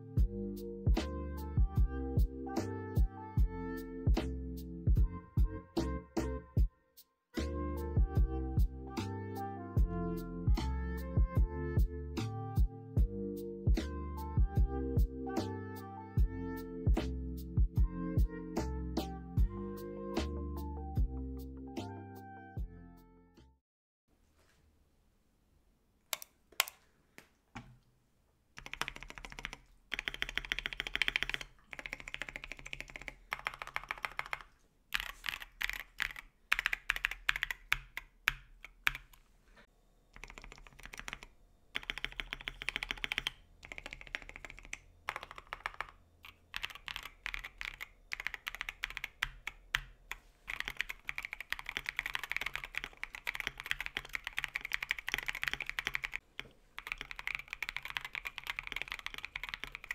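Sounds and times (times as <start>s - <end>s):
mechanical keyboard typing: 28.6s - 39.2s, 40.2s - 59.9s.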